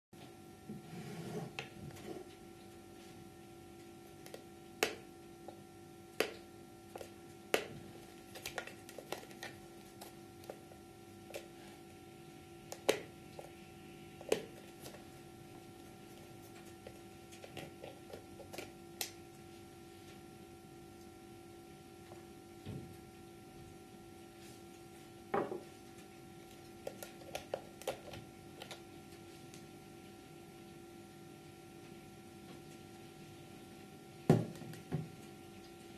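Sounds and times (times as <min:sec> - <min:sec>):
faint steady hum: 0:00.2 - 0:35.9.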